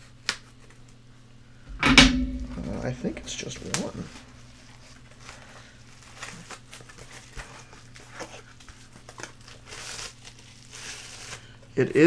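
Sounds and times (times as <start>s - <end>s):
steady low hum: 1.7s - 4.3s.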